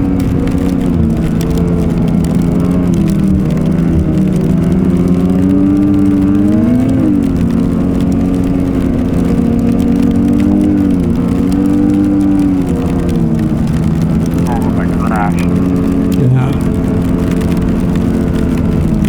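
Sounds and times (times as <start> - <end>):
snowmobile engine running: 14.1 - 17.0.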